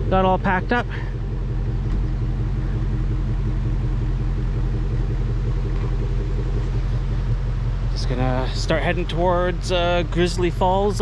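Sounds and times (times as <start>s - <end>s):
car engine humming: 0.0s - 11.0s.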